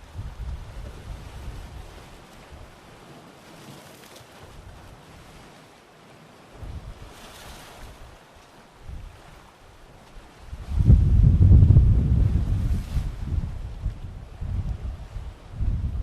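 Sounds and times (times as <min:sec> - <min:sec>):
wind buffeting microphone: 0:00.0 - 0:02.8, 0:06.5 - 0:08.2, 0:08.8 - 0:16.0
sea waves washing on rocks: 0:00.0 - 0:16.0.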